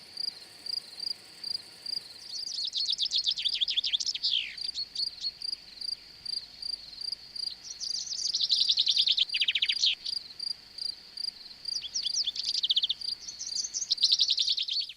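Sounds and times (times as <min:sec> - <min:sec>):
crickets chirping: 0:00.0 - 0:14.9
songbirds trilling: 0:01.9 - 0:10.4, 0:11.3 - 0:14.9.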